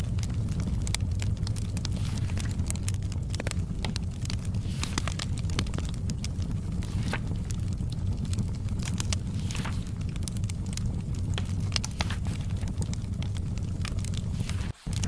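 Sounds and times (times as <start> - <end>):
low steady rumble: 0.0 - 15.0
wood fire crackling and popping: 0.0 - 15.0
papery swish: 1.9 - 2.5, 4.6 - 5.2, 6.8 - 7.3, 9.3 - 9.9, 11.9 - 12.6, 14.4 - 15.0.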